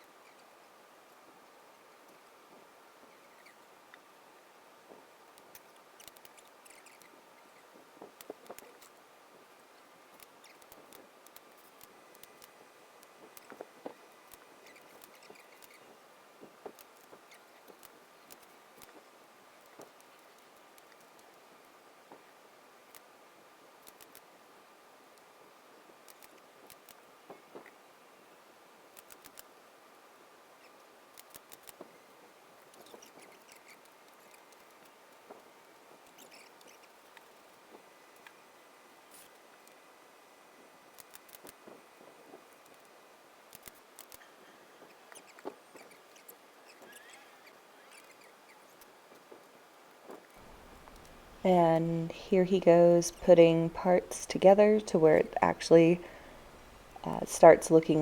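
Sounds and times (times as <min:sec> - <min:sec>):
light high squeaks: 0:45.1 - 0:48.3.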